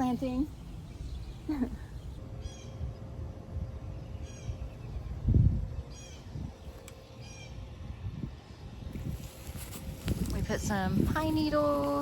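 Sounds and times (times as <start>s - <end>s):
bird calling: 0.0s - 3.1s, 4.0s - 5.1s, 5.8s - 7.7s.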